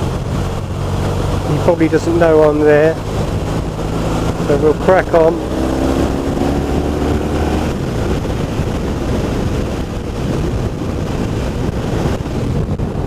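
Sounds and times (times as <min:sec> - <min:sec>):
motorcycle engine running: 0:00.0 - 0:13.0
wind rushing over microphone: 0:00.0 - 0:13.0.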